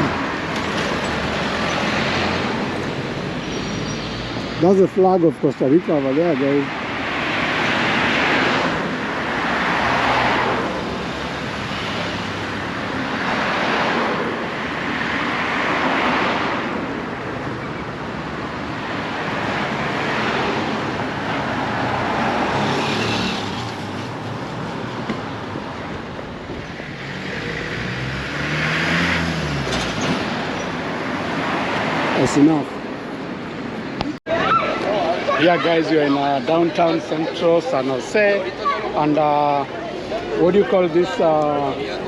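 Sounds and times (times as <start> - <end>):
vehicles passing: 0.0 - 42.0
vehicle engine passing by: 21.4 - 24.9, 26.8 - 30.7.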